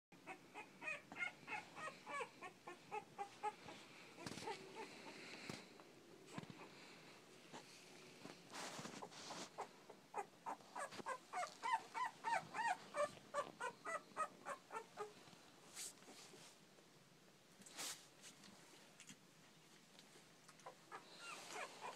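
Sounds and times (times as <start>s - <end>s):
puppies whimpering and squealing: 0.2s - 5.4s, 9.1s - 15.2s, 20.6s - 21.9s.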